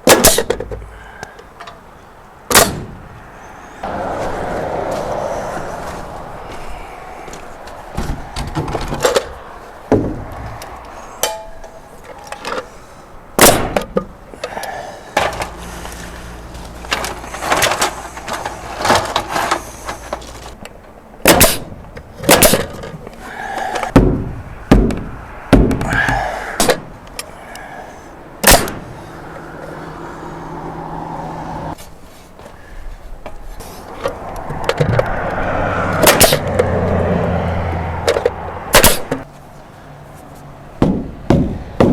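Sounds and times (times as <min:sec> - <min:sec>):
wooden boards knocking and banging: 0:07.9 - 0:10.6, 0:23.6 - 0:27.0, 0:40.8 - 0:41.9.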